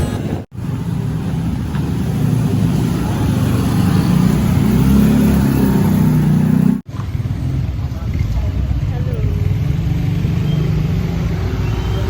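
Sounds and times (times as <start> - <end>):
vehicle engine accelerating: 0.6 - 8.8.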